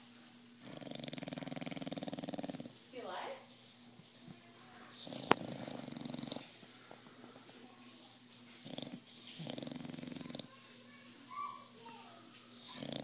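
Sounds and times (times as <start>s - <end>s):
dog snoring: 0.6s - 2.8s, 5.0s - 6.6s, 8.6s - 10.5s, 12.6s - 13.0s.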